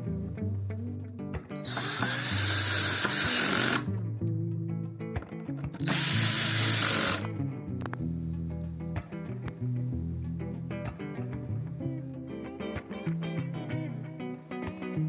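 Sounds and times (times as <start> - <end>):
background music: 0.0 - 15.0
small power tool running: 1.6 - 4.0, 5.7 - 7.3.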